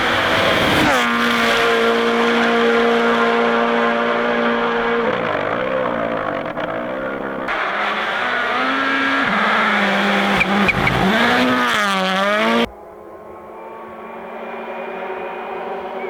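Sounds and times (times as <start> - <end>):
rally car engine at high revs: 0.0 - 12.7.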